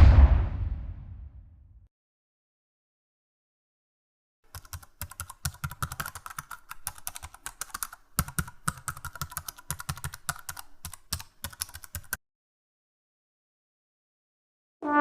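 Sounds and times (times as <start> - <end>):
typing on computer keyboard: 4.5 - 12.2.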